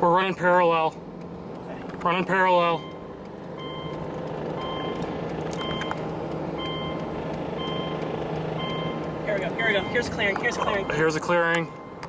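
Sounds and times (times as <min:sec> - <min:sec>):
car engine and road noise: 0:00.0 - 0:12.0
electronic chime beeps: 0:03.6 - 0:04.0, 0:06.6 - 0:07.0, 0:09.6 - 0:11.0.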